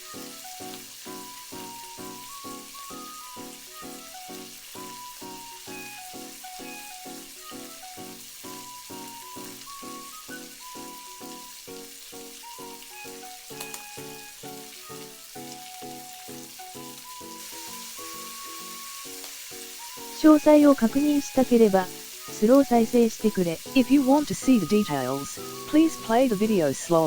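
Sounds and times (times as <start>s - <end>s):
egg sizzling in oil: 0.0s - 27.0s
background music with steady beat: 19.8s - 27.0s.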